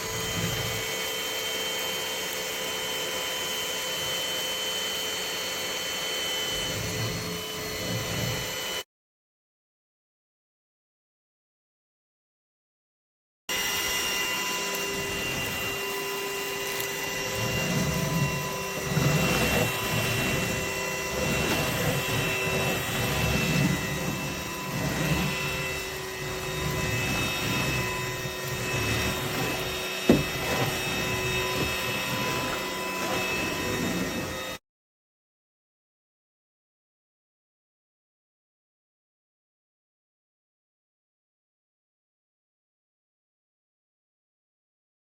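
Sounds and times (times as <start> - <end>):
stick vacuum whining: 0.0 - 8.8, 13.5 - 34.6
vacuum rubbing over floor: 0.0 - 8.8, 13.5 - 34.6.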